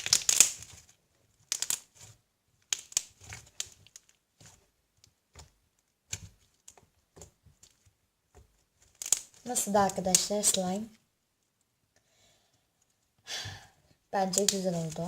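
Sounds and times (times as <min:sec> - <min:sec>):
slime squishing with sticky clicks: 0:00.0 - 0:10.8.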